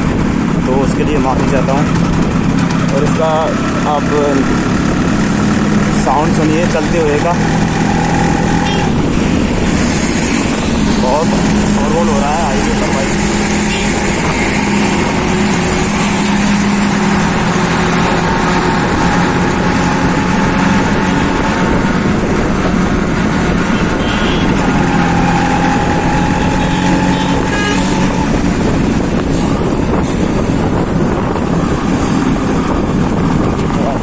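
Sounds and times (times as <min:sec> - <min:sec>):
highway traffic: 0:00.0 - 0:34.0
motorcycle engine running: 0:00.0 - 0:34.0
wind noise: 0:00.0 - 0:34.0.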